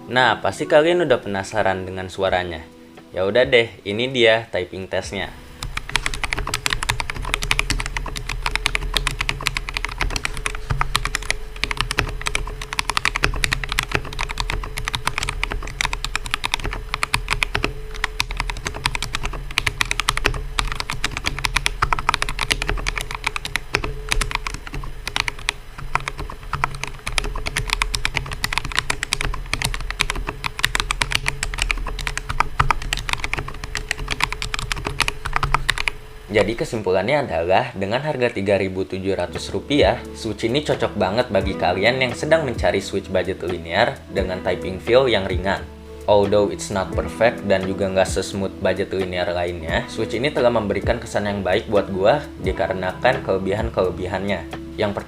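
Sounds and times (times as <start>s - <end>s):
mechanical keyboard typing: 5.6s - 36.7s.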